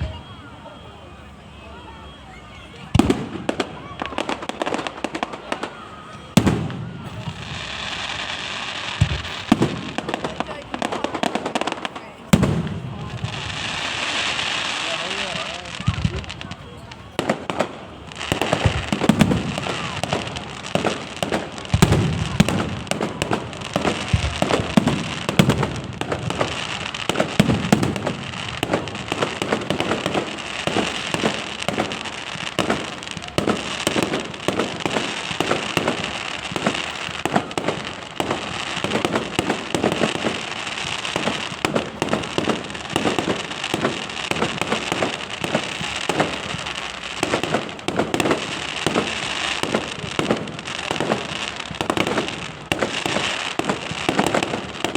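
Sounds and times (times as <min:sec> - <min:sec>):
fireworks bangs and crackling: 0:00.0 - 0:54.9
heavy firework booms: 0:02.9 - 0:54.9.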